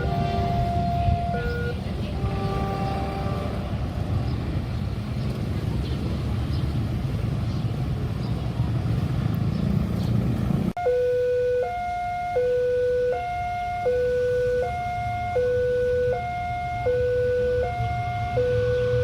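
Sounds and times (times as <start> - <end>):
two-tone level crossing alarm: 0.0 - 1.8, 10.8 - 19.0.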